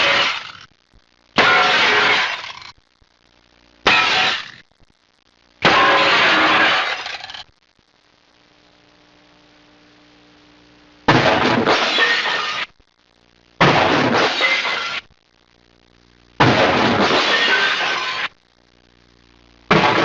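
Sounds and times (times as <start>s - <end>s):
faint hum: 0.0s - 20.0s
glass shattering: 1.4s - 2.7s, 3.9s - 4.6s, 5.6s - 7.4s, 11.2s - 12.7s, 13.7s - 15.0s, 16.5s - 18.3s.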